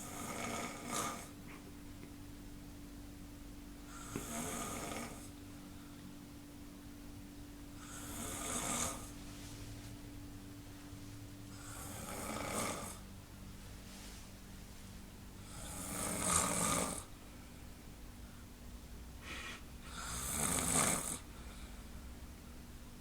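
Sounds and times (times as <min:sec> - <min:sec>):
person snoring: 0:00.0 - 0:01.3, 0:03.9 - 0:05.3, 0:07.8 - 0:09.1, 0:11.5 - 0:13.0, 0:15.4 - 0:17.1, 0:19.2 - 0:21.3.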